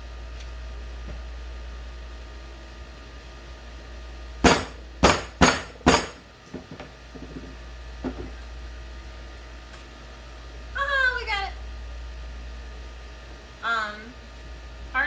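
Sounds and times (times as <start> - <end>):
hammer striking metal: 4.4 - 6.2.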